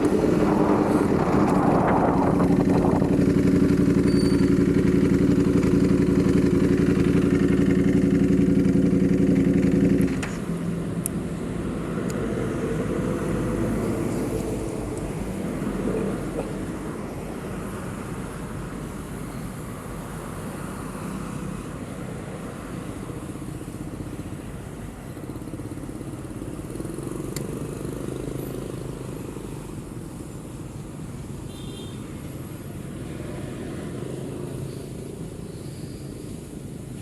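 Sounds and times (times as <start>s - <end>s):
motorcycle engine running: 0.0s - 10.5s
road and wind noise: 0.0s - 37.0s.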